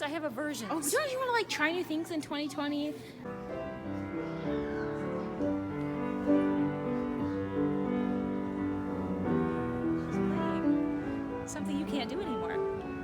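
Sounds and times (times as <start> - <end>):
slow keyboard music: 3.3 - 13.0.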